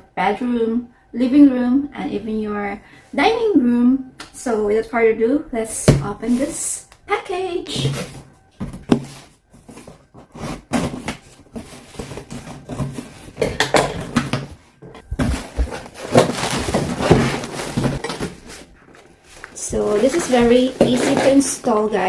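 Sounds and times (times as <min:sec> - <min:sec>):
cardboard package scraping and rustling: 0:07.9 - 0:13.4, 0:15.0 - 0:21.8.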